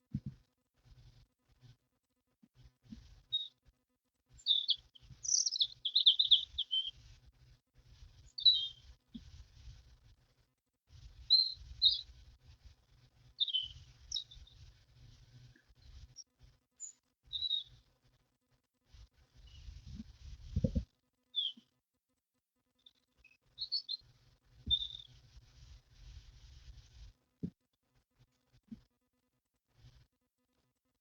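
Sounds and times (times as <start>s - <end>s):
songbirds singing: 3.3s - 3.6s, 4.4s - 7.1s, 8.2s - 8.9s, 11.3s - 12.2s, 13.4s - 14.7s, 16.8s - 17.8s, 21.4s - 21.6s, 23.6s - 24.1s, 24.7s - 25.1s.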